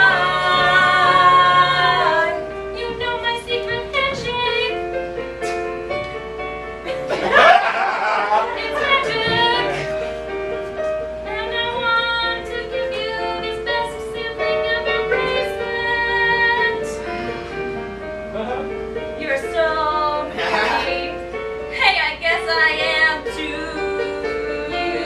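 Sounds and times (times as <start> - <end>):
musical accompaniment: 0.0 - 25.0
woman singing slow song: 8.2 - 9.9, 11.2 - 17.1, 21.8 - 25.0.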